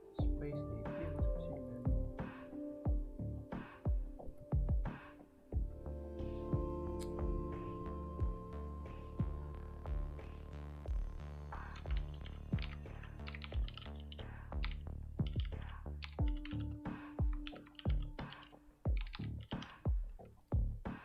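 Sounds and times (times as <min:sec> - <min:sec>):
background music with steady beat: 0:00.0 - 0:21.0
computer keyboard typing: 0:11.7 - 0:15.4.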